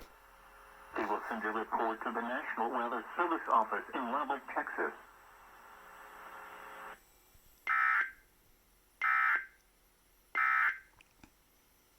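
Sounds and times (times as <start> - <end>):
emergency alert data tones: 7.7 - 8.1, 9.0 - 9.5, 10.4 - 10.8.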